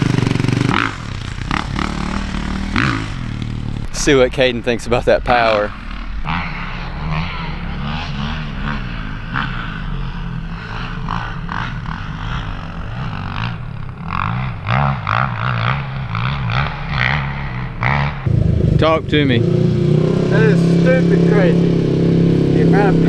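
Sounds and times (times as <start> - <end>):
motorbike engine revving: 0.0 - 23.0.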